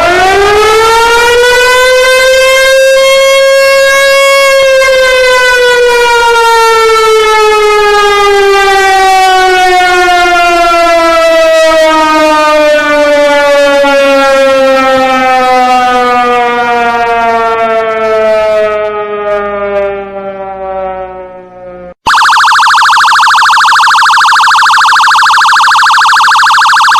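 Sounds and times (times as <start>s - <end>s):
loud warbling siren: 0.0s - 26.9s
siren winding down: 0.0s - 26.9s.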